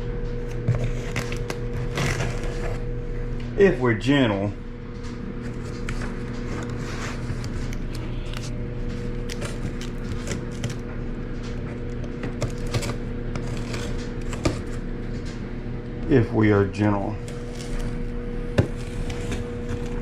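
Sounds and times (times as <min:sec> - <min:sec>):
steady low hum: 0:00.0 - 0:20.0
cardboard and tape scraping: 0:00.5 - 0:02.9, 0:05.5 - 0:10.9, 0:12.3 - 0:14.8, 0:17.2 - 0:18.0, 0:18.6 - 0:20.0.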